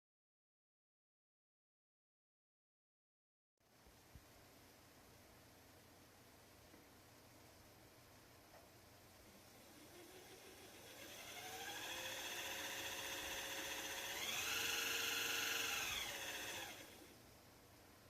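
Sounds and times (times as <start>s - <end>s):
lathe motor whine: 9.6s - 17.1s.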